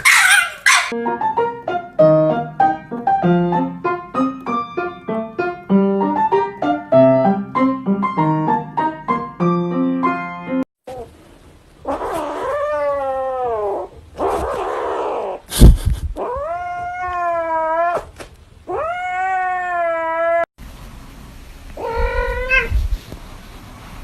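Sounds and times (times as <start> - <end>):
piano melody: 0.9 - 10.7.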